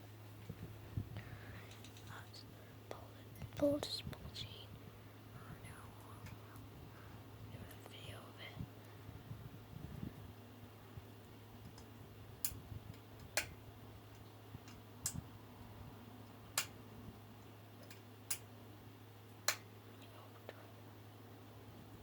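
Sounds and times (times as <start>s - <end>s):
sharp fan clicks: 0.0s - 4.4s, 5.4s - 9.0s, 11.0s - 20.6s
ceiling fan humming: 0.0s - 22.0s.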